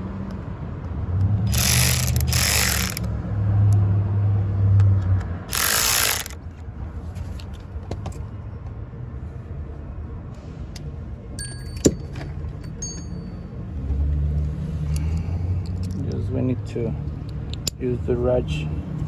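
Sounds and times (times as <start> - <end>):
power tool ratcheting and whirring: 1.5 - 3.1, 5.5 - 6.4.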